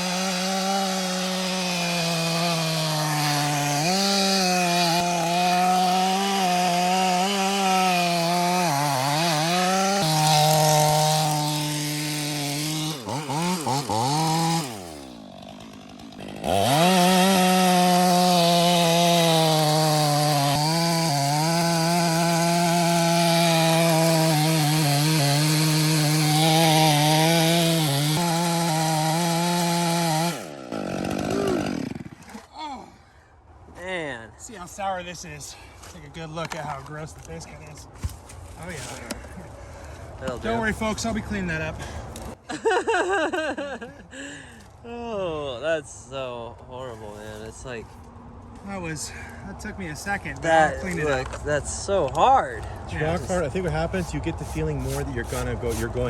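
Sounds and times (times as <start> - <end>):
chainsaw cutting wood: 0.0 - 32.5, 53.0 - 56.0.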